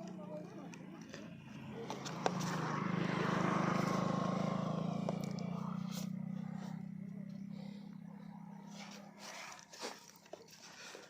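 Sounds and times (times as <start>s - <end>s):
vehicle passing by: 0.0s - 9.7s.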